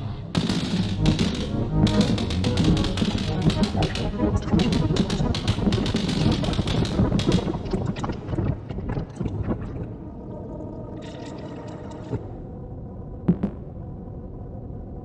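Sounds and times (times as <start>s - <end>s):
noisy synth drone: 0.0s - 8.5s
electronic crackling clicks: 0.4s - 9.9s.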